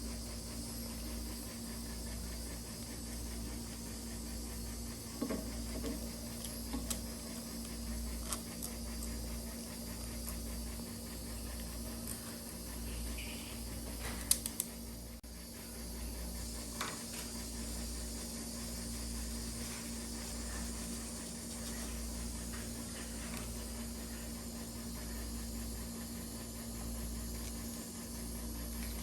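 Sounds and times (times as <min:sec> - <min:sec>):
small parts clicking and tapping: 0:14.1 - 0:14.7.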